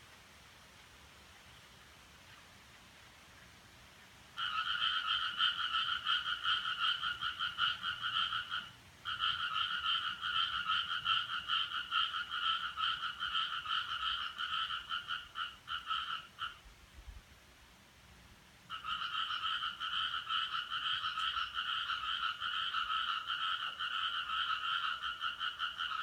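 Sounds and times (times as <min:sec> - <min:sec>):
frog trilling: 0:04.4 - 0:16.6, 0:18.7 - 0:26.0.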